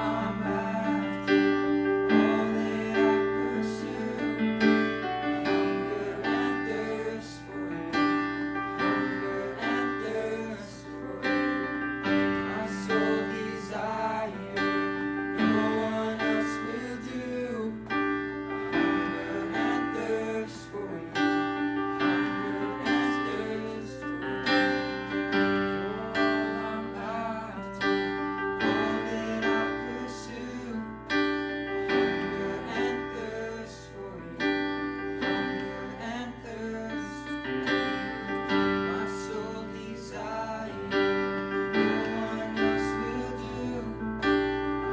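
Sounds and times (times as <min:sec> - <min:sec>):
piano chords and notes: 0:00.0 - 0:44.9.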